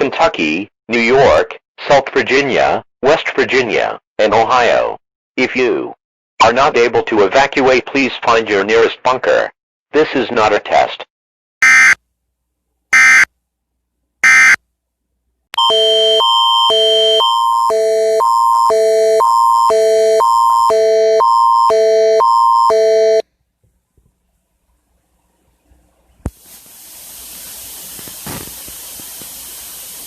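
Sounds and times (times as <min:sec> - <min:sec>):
alternating pitch alert tone: 0:11.6 - 0:12.0, 0:13.0 - 0:13.3, 0:14.2 - 0:14.6, 0:15.6 - 0:23.2.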